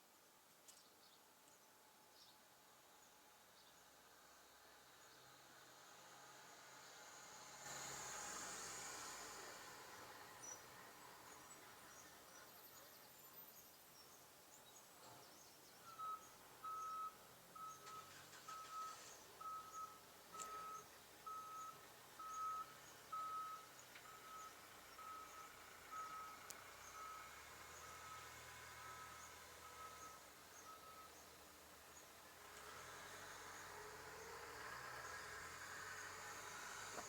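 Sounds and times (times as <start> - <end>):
faint reversing alarm beeping: 15.8 - 31.5.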